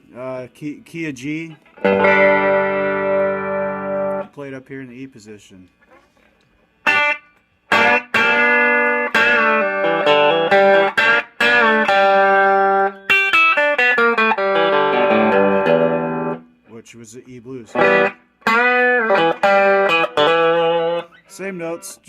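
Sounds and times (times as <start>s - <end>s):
guitar playing picked notes: 1.3s - 4.3s, 6.8s - 16.8s, 17.7s - 22.0s.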